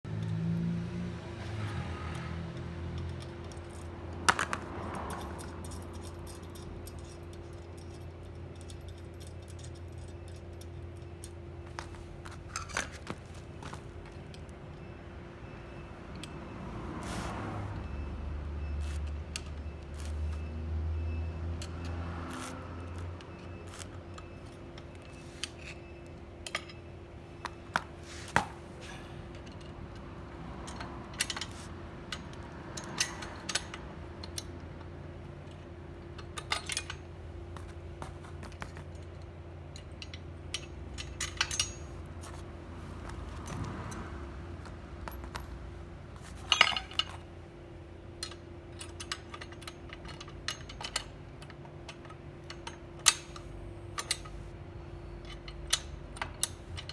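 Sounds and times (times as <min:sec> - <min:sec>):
metal parts clinking: 0:02.1 - 0:14.5, 0:21.6 - 0:47.5, 0:48.2 - 0:54.5.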